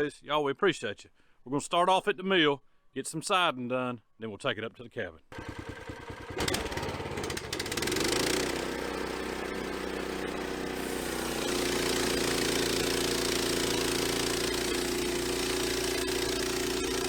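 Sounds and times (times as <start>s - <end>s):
sawmill gasoline engine running: 5.3s - 17.0s.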